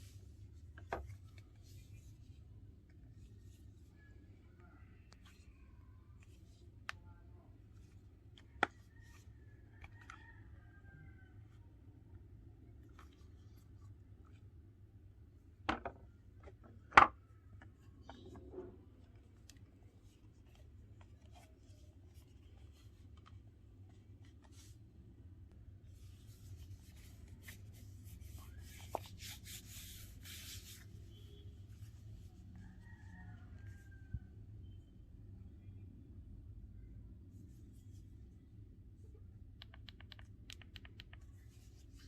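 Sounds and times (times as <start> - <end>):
scratchy rubbing and rustling: 25.9 - 32.4.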